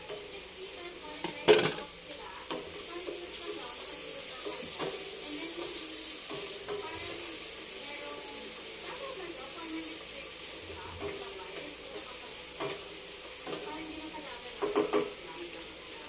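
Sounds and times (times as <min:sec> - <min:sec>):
garlic sizzling in a pan: 0:00.0 - 0:16.0
utensil clanking against pan: 0:01.2 - 0:07.8, 0:10.9 - 0:13.8, 0:14.5 - 0:15.3.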